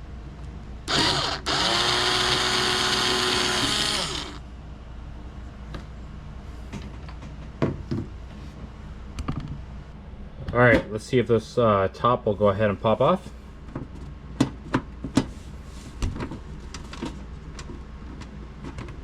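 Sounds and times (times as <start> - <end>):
power screwdriver motor whine: 0.9 - 4.4.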